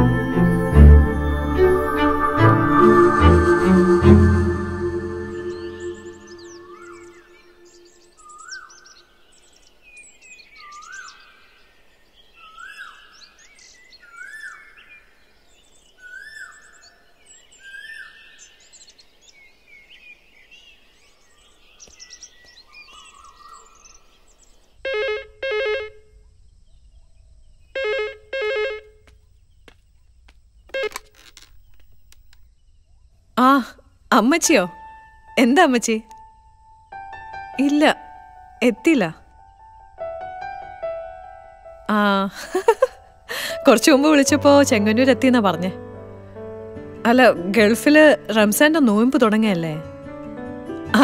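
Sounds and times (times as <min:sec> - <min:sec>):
bird chirps: 0:01.2 - 0:24.8, 0:41.9 - 0:45.8
bird rising whistle: 0:02.0 - 0:08.7
telephone ringing: 0:24.9 - 0:26.0, 0:27.8 - 0:29.0, 0:30.7 - 0:31.4.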